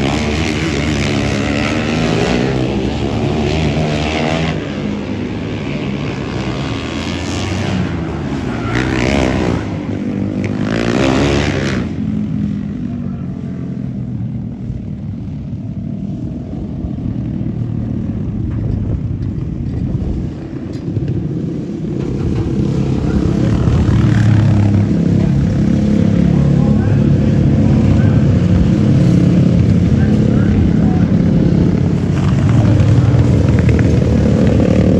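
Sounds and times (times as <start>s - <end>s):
engines revving: 0.0s - 13.0s, 20.2s - 34.9s.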